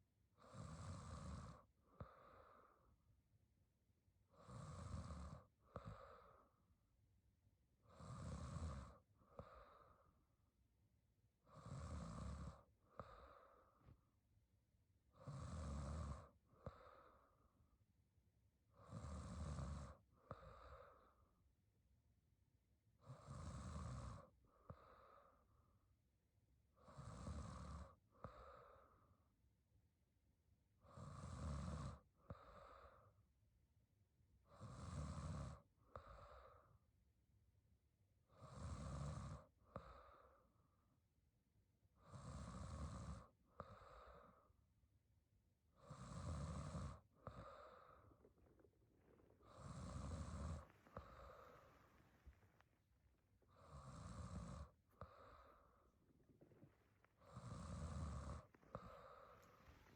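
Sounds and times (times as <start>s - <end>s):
woman snoring quietly: 0.4s - 2.8s, 4.3s - 6.6s, 7.8s - 10.2s, 11.4s - 14.0s, 15.1s - 17.4s, 18.8s - 21.3s, 23.0s - 25.5s, 26.7s - 29.3s, 30.8s - 33.2s, 34.5s - 36.8s, 38.3s - 40.6s, 42.0s - 44.6s, 45.7s - 59.9s
soft breath: 0.4s - 3.2s, 4.3s - 6.7s, 7.9s - 10.4s, 11.5s - 14.2s, 16.0s - 17.7s, 19.8s - 21.4s, 23.8s - 25.8s, 26.8s - 29.3s, 32.2s - 33.2s, 35.5s - 36.8s, 39.4s - 40.8s, 43.2s - 44.7s, 45.7s - 59.9s.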